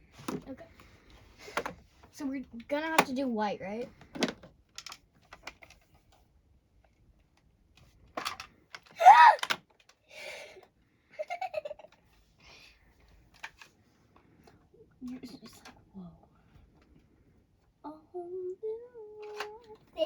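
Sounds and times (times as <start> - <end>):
person exclaiming: 9.0 - 9.5
breathy giggling: 11.1 - 11.9.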